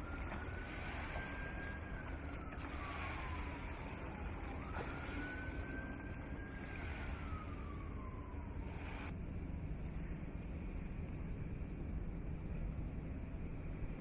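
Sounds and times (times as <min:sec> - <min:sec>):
siren wailing: 0:00.0 - 0:09.1
steady low rumble: 0:00.0 - 0:14.0.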